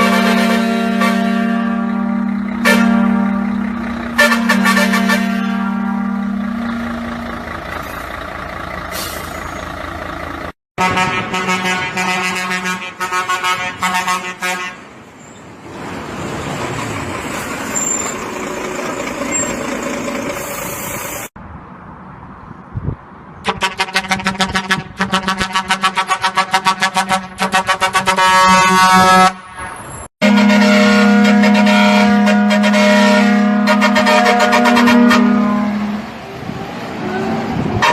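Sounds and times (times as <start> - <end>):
vehicle horn blasts: 0.0 - 7.1, 10.8 - 14.8, 23.5 - 29.4, 30.2 - 36.1.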